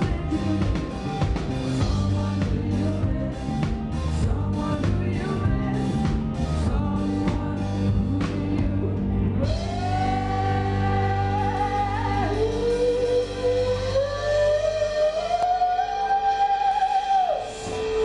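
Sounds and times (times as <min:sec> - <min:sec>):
drums beating: 0:00.0 - 0:10.8
live pop-rock band: 0:00.0 - 0:18.0.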